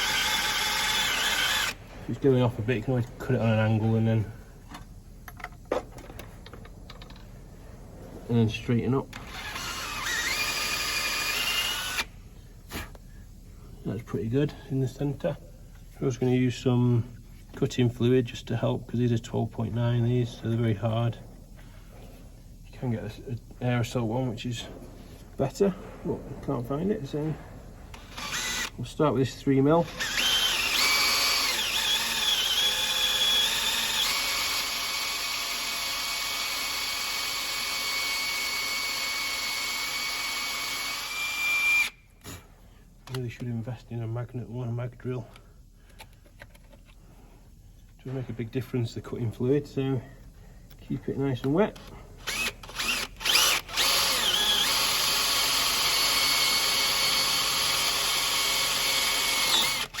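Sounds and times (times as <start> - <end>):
electric drill whining under load: 0.0 - 1.8, 9.2 - 12.1, 27.9 - 28.7, 29.8 - 42.0, 52.2 - 60.0.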